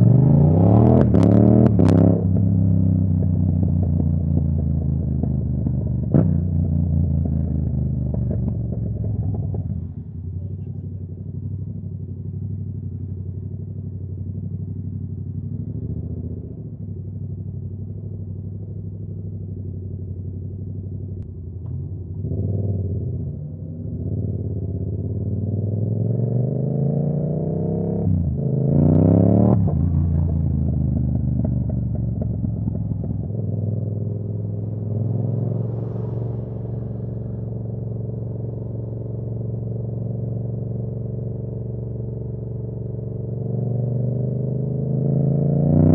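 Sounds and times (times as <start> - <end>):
motorcycle engine revving: 22.1 - 45.9.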